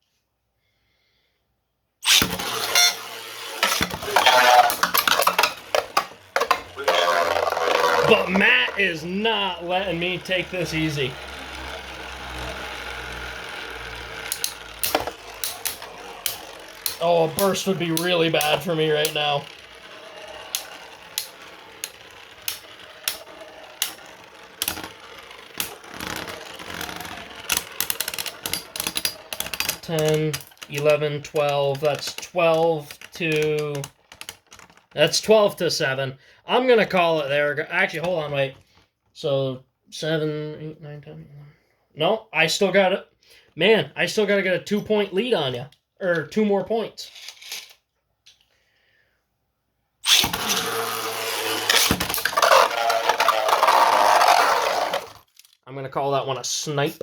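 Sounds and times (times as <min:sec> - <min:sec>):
spinning tops launched: 0:02.0 - 0:35.3, 0:50.0 - 0:55.3
spinning tops whirring and clattering: 0:02.0 - 0:36.0, 0:50.0 - 0:55.6.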